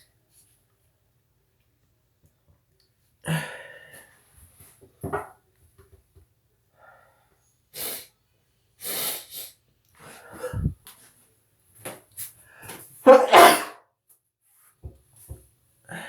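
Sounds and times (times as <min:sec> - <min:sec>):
person sneezing: 0:13.1 - 0:13.8.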